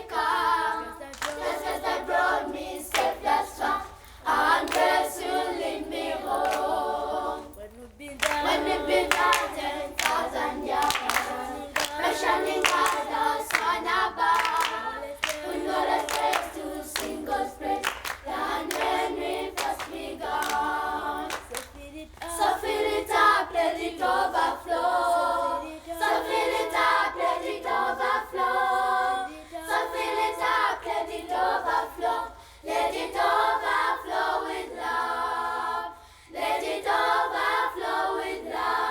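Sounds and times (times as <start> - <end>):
children's choir singing: 0.0 - 38.9
hand clapping: 1.0 - 7.0, 8.2 - 22.8.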